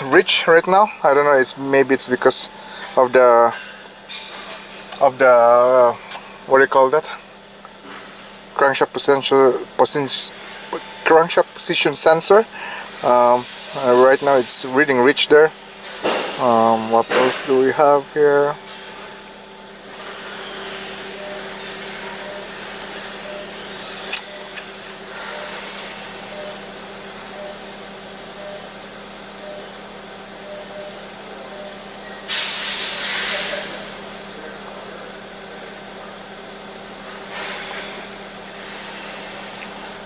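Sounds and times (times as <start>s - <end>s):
car engine idling: 0.0s - 37.3s
loud hiss: 12.4s - 26.6s, 32.3s - 34.1s.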